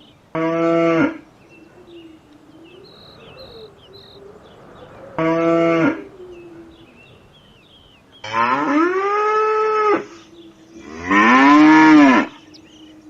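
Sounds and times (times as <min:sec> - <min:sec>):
cow mooing: 0:02.7 - 0:06.3, 0:08.2 - 0:10.1, 0:10.8 - 0:12.4.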